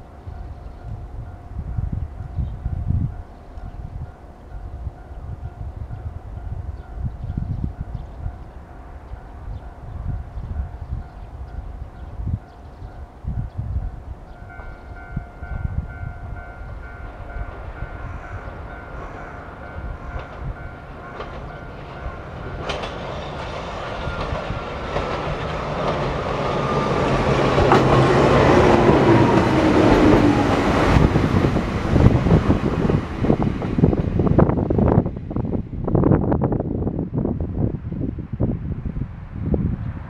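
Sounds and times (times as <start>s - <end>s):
electric train passing: 0.0s - 40.0s
rail joint clacks: 14.3s - 35.3s.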